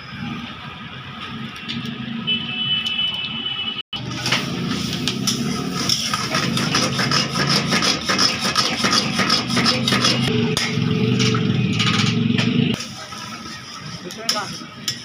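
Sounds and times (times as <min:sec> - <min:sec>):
metal spatula scraping and clattering: 0:04.0 - 0:15.0.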